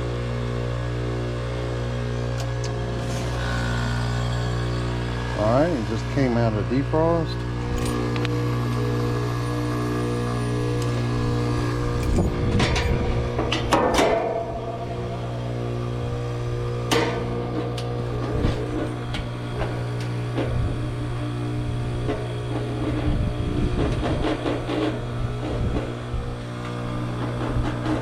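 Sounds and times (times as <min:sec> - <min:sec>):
heat pump humming: 0:00.0 - 0:28.0.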